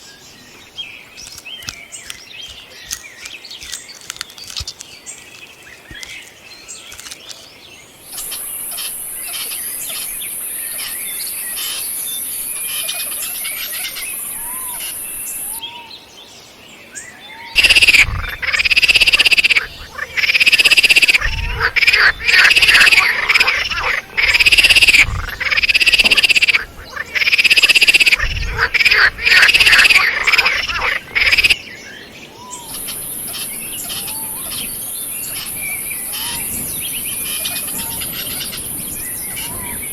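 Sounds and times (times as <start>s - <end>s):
squirrel calling: 8.0s - 15.6s, 17.5s - 31.6s, 32.4s - 39.9s
high insect-like buzz: 8.1s - 15.6s, 17.6s - 26.6s.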